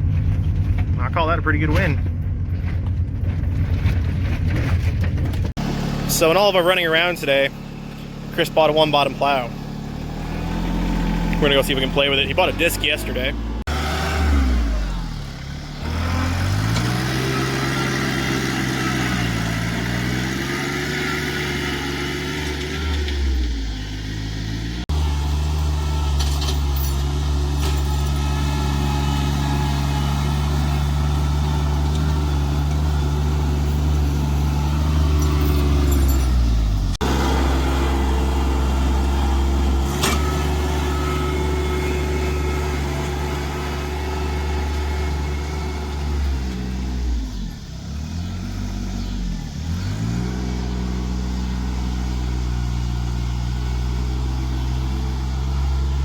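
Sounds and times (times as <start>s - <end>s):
vehicle engine running: 0.0s - 56.0s.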